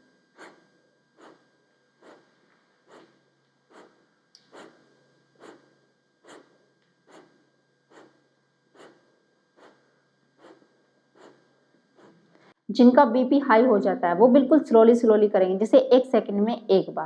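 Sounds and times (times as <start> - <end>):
forceful nasal exhalations: 1.2 - 1.4, 2.0 - 4.8, 5.4 - 12.5.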